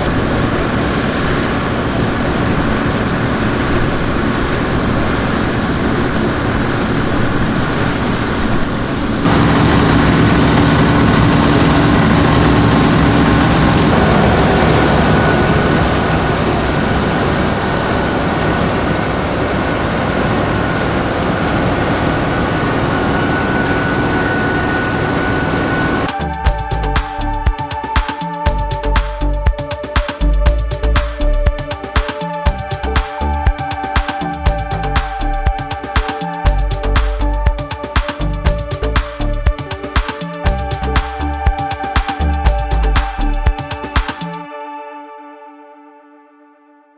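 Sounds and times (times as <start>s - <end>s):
diesel combine engine running: 8.5s - 27.4s.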